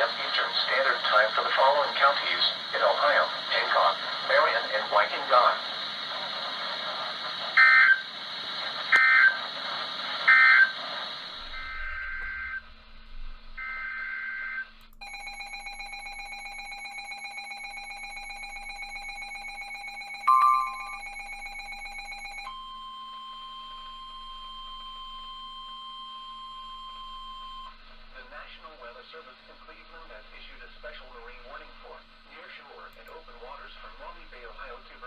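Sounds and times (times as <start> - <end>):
electronic beeps: 13.7 - 22.6
steady electronic alert tone: 15.0 - 22.5.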